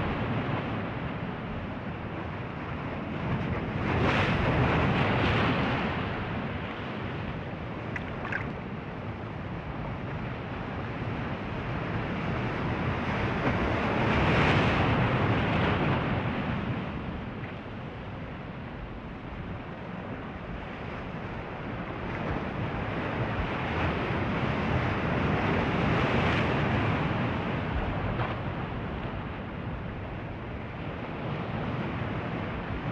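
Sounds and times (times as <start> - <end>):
waves breaking on shore: 3.5 - 9.8.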